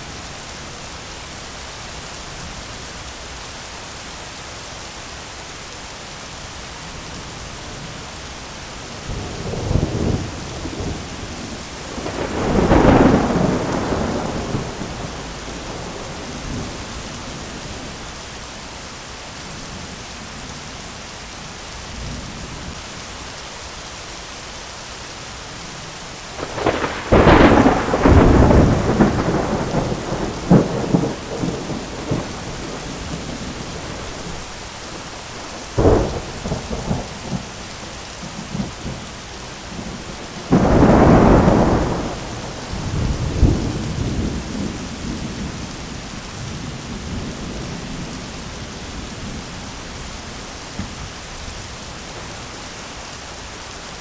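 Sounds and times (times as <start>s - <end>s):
steady rain: 0.0s - 54.0s
thunder claps: 9.4s - 16.8s, 26.4s - 34.4s, 39.8s - 45.6s.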